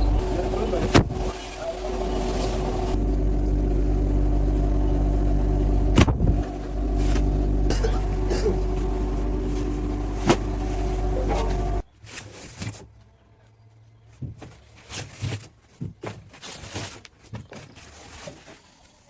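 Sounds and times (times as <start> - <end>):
factory machinery humming: 0.0 - 11.9.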